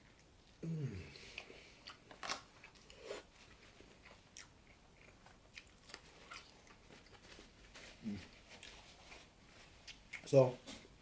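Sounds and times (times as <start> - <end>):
person chewing crunchy food: 0.0 - 7.2.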